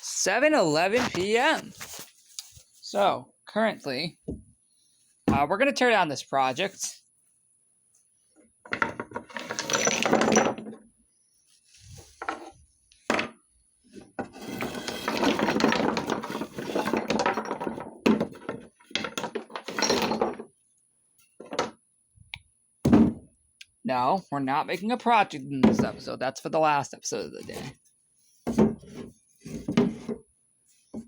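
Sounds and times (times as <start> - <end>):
small hard objects rattling: 9.2 - 10.6.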